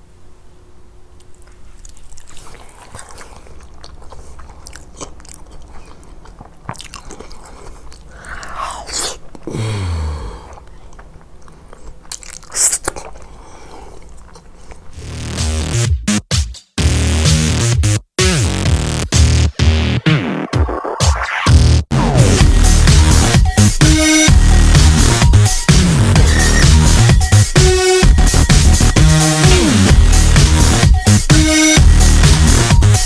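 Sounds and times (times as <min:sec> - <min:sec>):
mouth clicks: 0:01.2 - 0:15.0
person biting and chewing food: 0:01.2 - 0:15.2.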